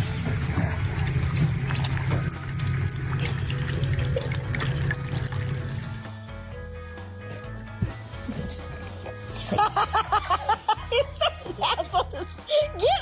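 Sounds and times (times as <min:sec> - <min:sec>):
tap water running into sink: 0:00.0 - 0:06.1
background music: 0:00.0 - 0:13.0.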